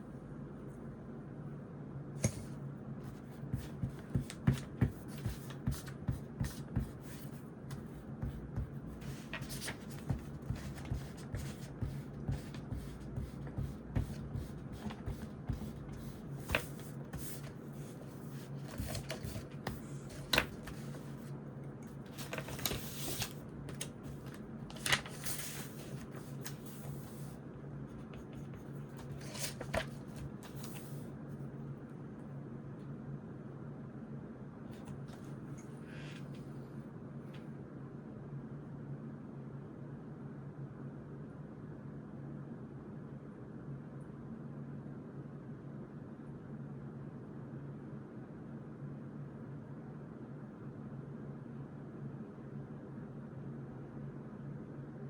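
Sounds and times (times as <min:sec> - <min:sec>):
steady low hum: 0:00.0 - 0:55.0
paper rustling: 0:03.1 - 0:27.4, 0:28.0 - 0:31.0.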